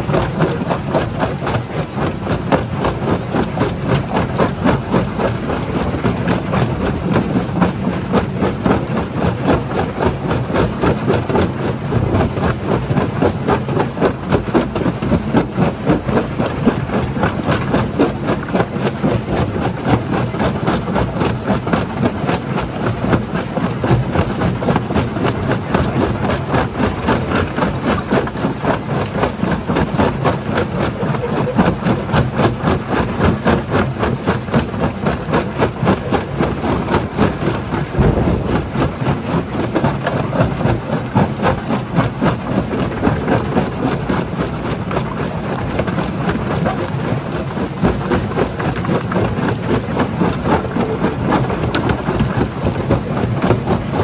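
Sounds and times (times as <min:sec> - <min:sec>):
crusher machine drone: 0:35.7 - 0:44.4
rock clattering in crusher: 0:36.4 - 0:41.1.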